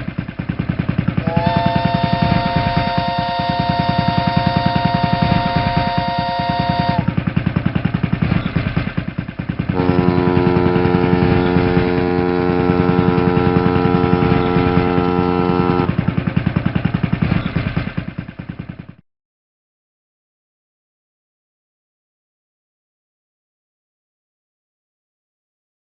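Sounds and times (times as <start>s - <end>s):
boat engine chugging: 0.0s - 19.0s
lower horn blast: 1.2s - 7.1s, 9.7s - 16.0s
horn blast: 1.2s - 7.2s, 9.7s - 16.1s.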